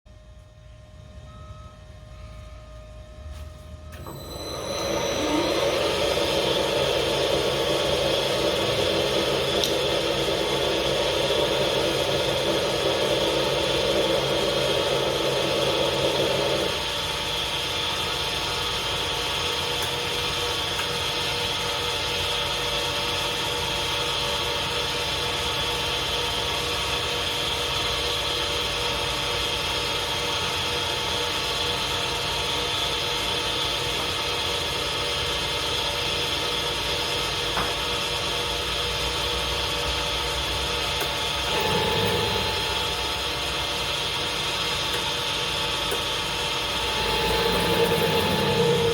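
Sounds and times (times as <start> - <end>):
lathe humming: 4.0 - 28.8, 32.2 - 48.9
loud rough noise: 46.6 - 48.9.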